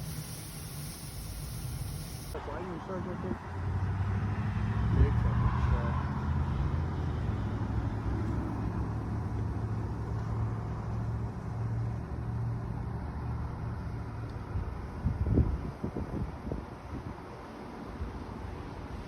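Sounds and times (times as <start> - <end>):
faint hiss: 0.0 - 2.4.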